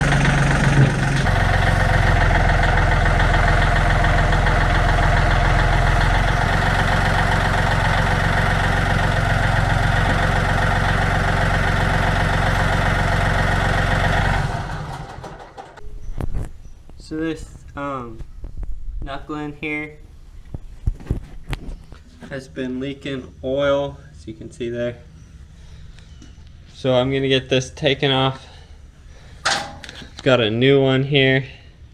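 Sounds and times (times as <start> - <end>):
tractor diesel engine running: 0.0 - 15.8, 29.4 - 30.2.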